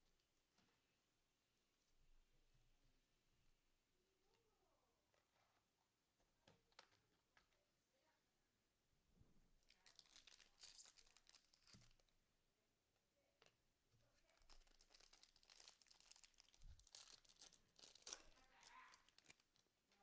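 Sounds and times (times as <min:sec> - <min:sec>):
card pack wrapper tearing: 0:09.7 - 0:12.0, 0:14.4 - 0:19.6.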